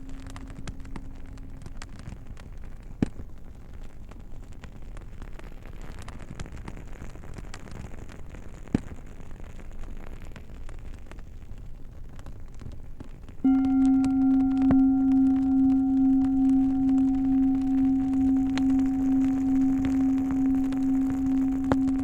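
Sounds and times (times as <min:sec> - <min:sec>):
singing bowl ringing: 0:00.0 - 0:02.2, 0:13.4 - 0:22.0.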